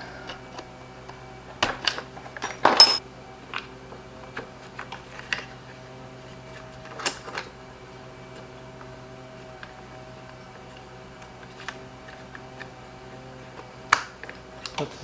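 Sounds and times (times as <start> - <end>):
parts clattering: 1.6 - 3.0
tools clicking and knocking: 2.4 - 3.0.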